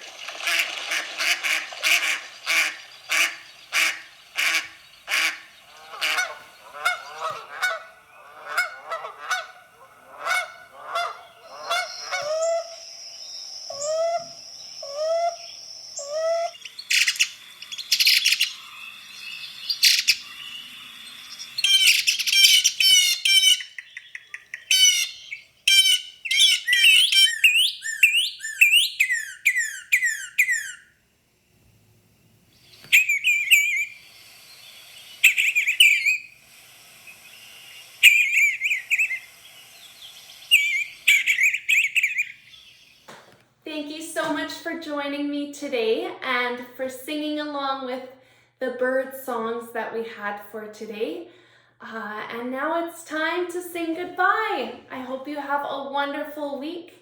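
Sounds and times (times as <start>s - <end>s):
bird honking calls: 0.0s - 13.0s, 13.7s - 31.0s, 32.8s - 34.0s, 34.7s - 36.4s, 37.0s - 43.0s
birds chirping: 0.0s - 31.0s, 32.3s - 43.4s.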